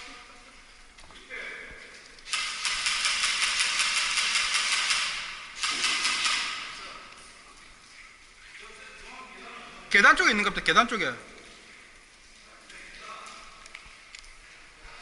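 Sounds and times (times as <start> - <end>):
airsoft gun bursts: 2.3 - 6.8.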